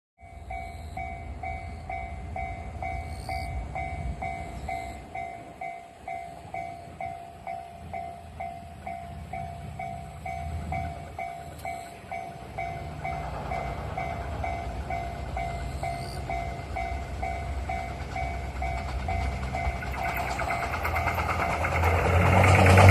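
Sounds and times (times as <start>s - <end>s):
train rumble: 0.2s - 22.9s.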